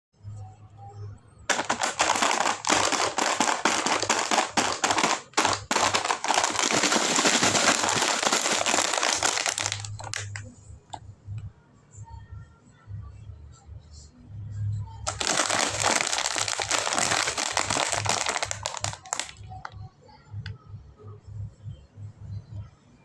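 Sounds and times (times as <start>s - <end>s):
plastic packaging crinkling: 1.5s - 10.4s, 15.1s - 19.7s.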